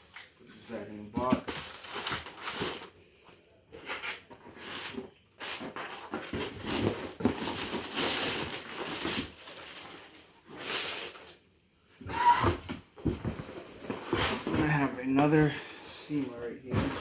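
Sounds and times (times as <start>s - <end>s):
cardboard box rustling and scraping: 12.1s - 15.5s.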